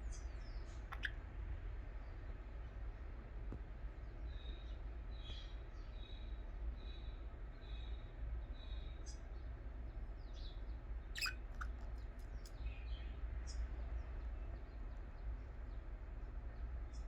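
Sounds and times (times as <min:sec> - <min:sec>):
budgerigars chirping: 0:00.1 - 0:01.2, 0:11.2 - 0:12.0.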